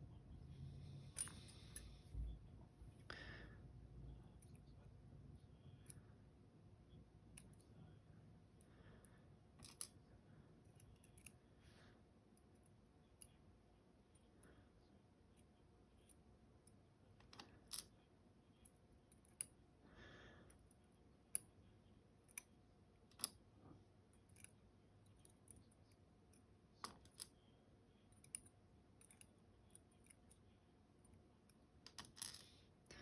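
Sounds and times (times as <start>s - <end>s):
clicks of small metal lock parts: 10.7s - 11.4s, 23.1s - 23.4s, 28.2s - 30.4s.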